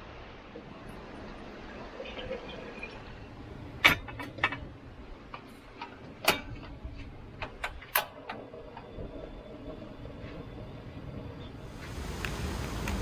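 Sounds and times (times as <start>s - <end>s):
low rushing noise: 11.4s - 13.0s.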